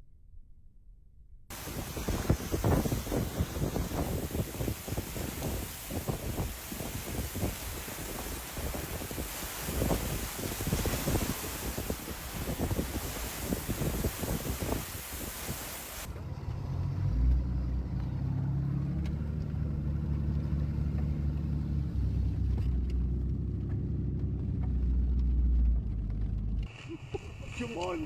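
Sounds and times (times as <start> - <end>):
brief hiss: 1.5 - 16.1
low steady humming rumble: 15.9 - 28.0.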